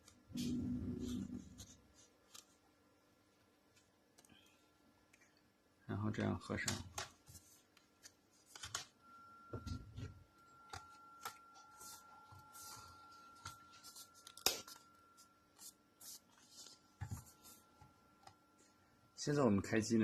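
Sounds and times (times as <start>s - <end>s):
faint high whine: 8.8s - 20.0s.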